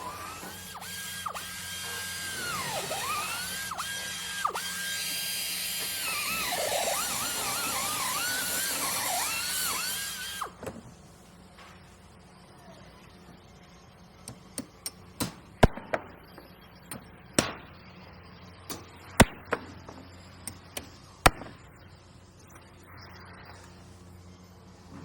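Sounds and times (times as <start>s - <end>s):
power drill motor whining: 0.0s - 10.6s.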